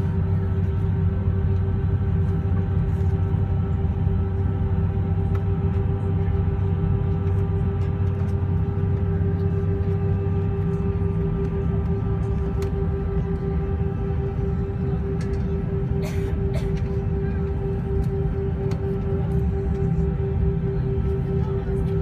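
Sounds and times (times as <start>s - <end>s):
airliner cabin hum: 0.0s - 22.0s.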